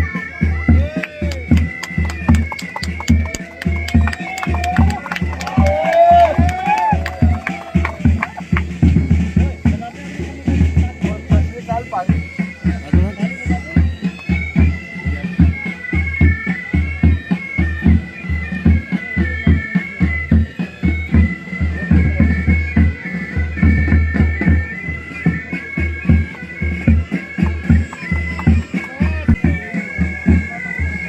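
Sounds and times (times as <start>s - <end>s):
bagpipes playing with drone: 0.0s - 31.0s
snare and bass drums: 0.4s - 11.5s.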